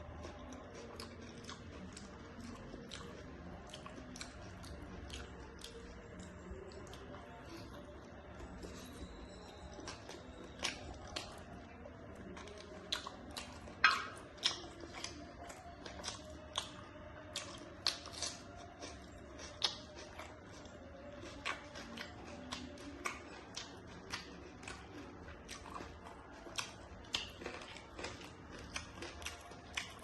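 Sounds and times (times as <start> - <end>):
person chewing and biting: 0.0 - 7.8, 8.4 - 30.0.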